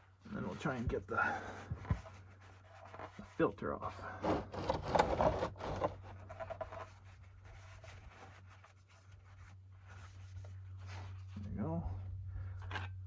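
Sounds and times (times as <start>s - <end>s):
scraping and rustling handling: 0.3s - 13.0s
steady low hum: 9.2s - 13.0s.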